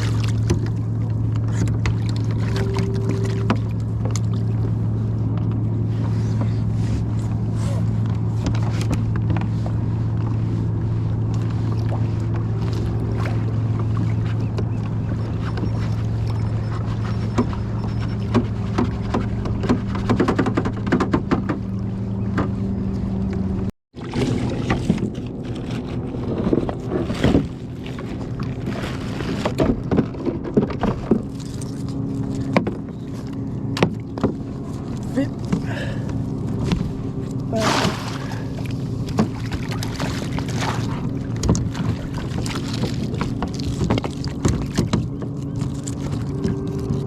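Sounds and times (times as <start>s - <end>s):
boat engine running: 0.0s - 47.0s
knocks and clatter: 18.3s - 21.7s.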